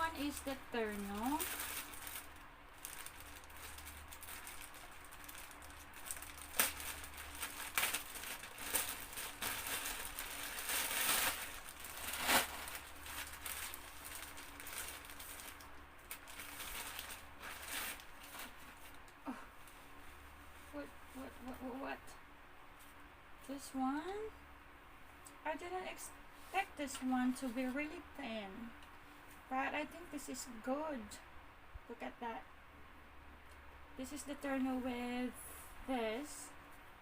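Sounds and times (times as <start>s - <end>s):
packaging crinkling and rustling: 0.1s - 19.2s.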